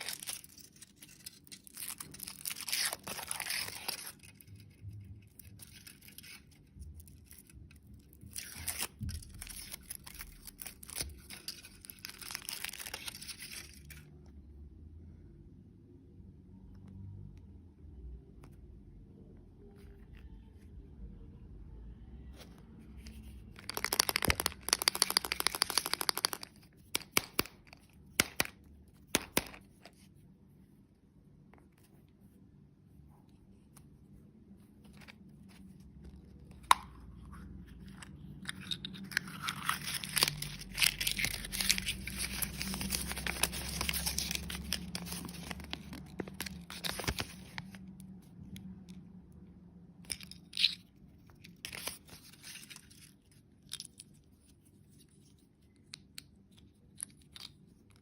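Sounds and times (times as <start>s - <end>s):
wrapper crinkling: 0.0s - 4.8s, 5.4s - 14.1s, 23.1s - 27.5s, 38.4s - 47.9s
candy wrappers tearing: 0.0s - 14.2s, 23.0s - 29.8s, 37.6s - 48.2s, 50.0s - 58.0s.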